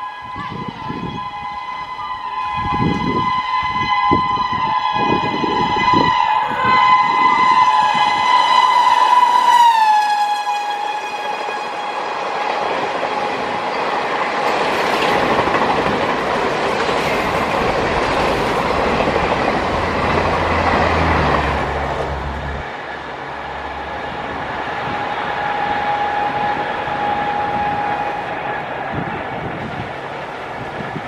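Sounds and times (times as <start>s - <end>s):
shrill locomotive horn: 0.0s - 13.9s, 19.7s - 29.8s
train wheels on rails: 0.0s - 31.0s.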